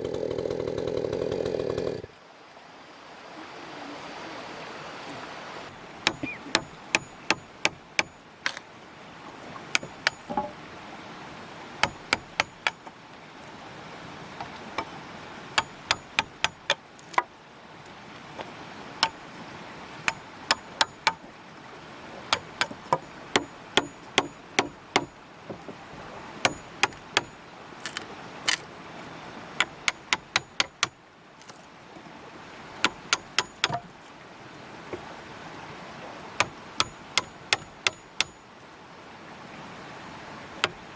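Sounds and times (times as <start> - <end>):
hand tool striking wood: 6.0 - 8.6, 9.8 - 10.6, 11.8 - 12.9, 15.6 - 17.3, 20.1 - 21.2, 22.3 - 25.2, 26.4 - 28.7, 29.6 - 31.7, 32.8 - 33.9, 36.4 - 38.4.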